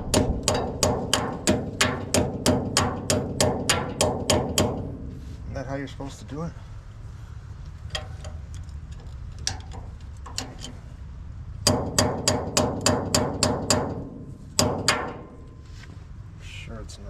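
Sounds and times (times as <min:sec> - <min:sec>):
hammer tapping on metal: 0:00.0 - 0:05.0, 0:11.6 - 0:15.4.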